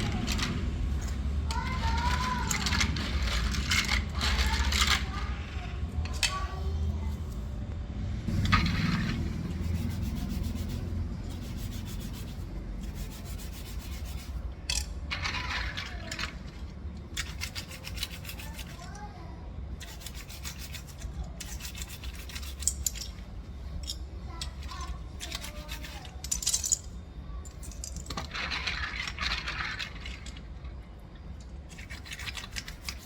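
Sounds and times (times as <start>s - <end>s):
brush scrubbing keyboard: 8.3s - 14.4s, 17.2s - 18.9s, 19.8s - 22.9s, 31.7s - 33.0s.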